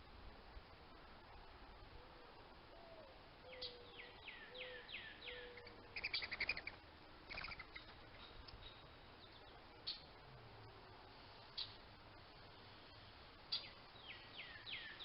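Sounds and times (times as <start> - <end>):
rapid high bird chattering: 5.6 - 8.3.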